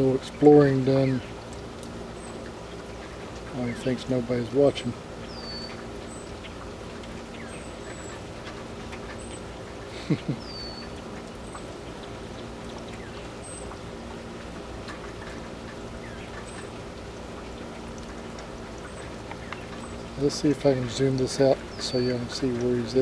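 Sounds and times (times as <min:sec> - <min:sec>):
steady rain: 0:00.0 - 0:23.0
low falling bird call: 0:09.1 - 0:11.7
faint high bird chirps: 0:10.4 - 0:11.0.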